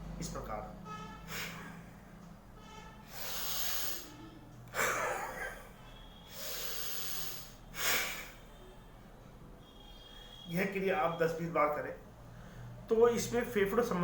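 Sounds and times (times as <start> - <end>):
man breathing deeply: 3.0 - 4.3, 6.2 - 8.6.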